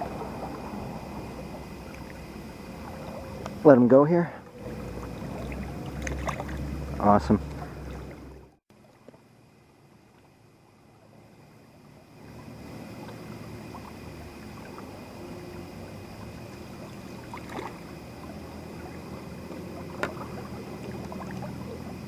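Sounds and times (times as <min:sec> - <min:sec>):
river water running and lapping: 0:00.0 - 0:22.0
steady high-pitched hum: 0:00.0 - 0:22.0.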